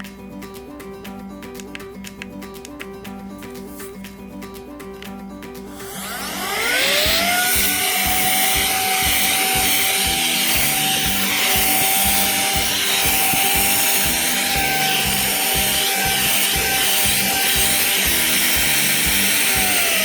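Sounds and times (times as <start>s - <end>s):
background music with beat: 0.0s - 20.0s
air duster motor whining: 5.8s - 20.0s.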